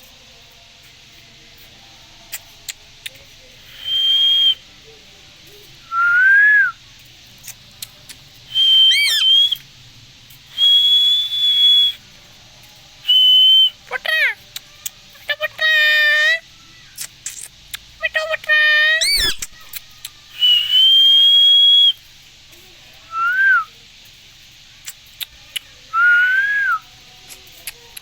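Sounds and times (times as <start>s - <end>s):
parrot whistling: 3.0s - 4.6s, 5.8s - 6.8s, 8.5s - 9.6s, 10.5s - 12.0s, 13.0s - 14.4s, 18.0s - 22.0s, 23.1s - 23.7s, 25.5s - 26.8s
sharp clicks: 7.0s - 9.6s, 16.9s - 18.0s, 24.8s - 25.7s.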